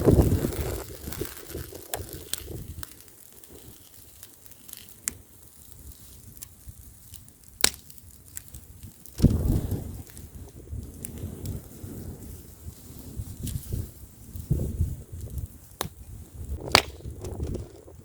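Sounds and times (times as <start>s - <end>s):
wind rumbling on microphone: 0.0s - 4.2s, 8.5s - 18.0s
bonfire crackling and popping: 0.0s - 18.0s.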